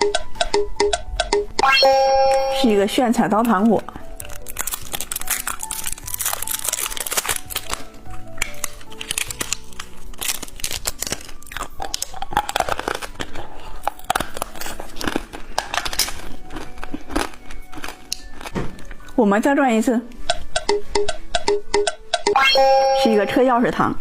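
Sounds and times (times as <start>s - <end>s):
background music: 0.0s - 24.0s
plastic packaging crinkling: 3.2s - 19.2s.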